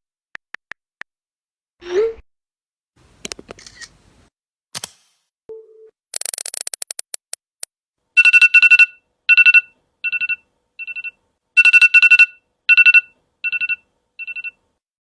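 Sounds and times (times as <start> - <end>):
fast ticks: 6.2 - 7.4.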